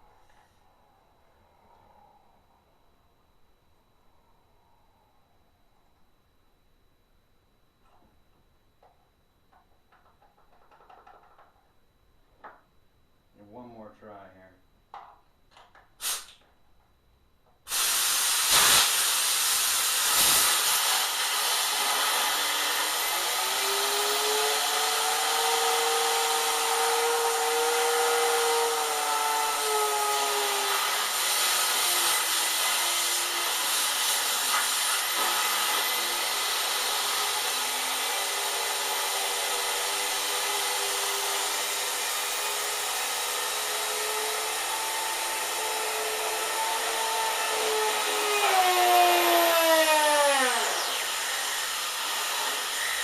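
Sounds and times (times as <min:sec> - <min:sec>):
compressed air hissing: 0:16.0 - 0:16.4, 0:17.7 - 0:22.0
pump whine: 0:17.7 - 0:53.0.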